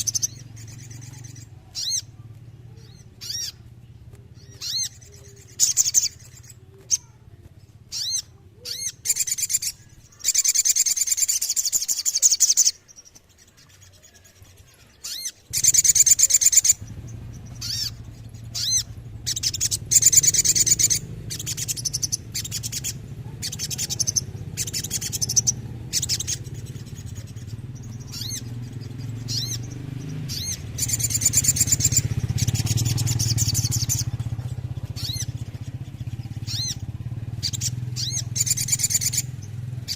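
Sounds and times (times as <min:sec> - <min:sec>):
bird chips and rolling trills: 0:00.0 - 0:39.9.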